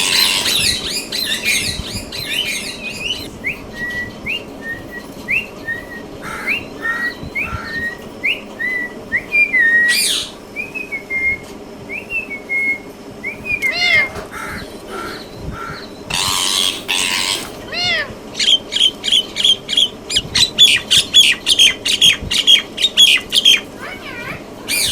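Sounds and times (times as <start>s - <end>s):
parrot squawking: 0.0s - 3.3s, 6.2s - 8.0s, 9.9s - 10.4s, 13.7s - 18.6s, 23.0s - 24.9s
parrot calling: 0.0s - 4.5s, 5.4s - 10.4s, 13.4s - 24.9s.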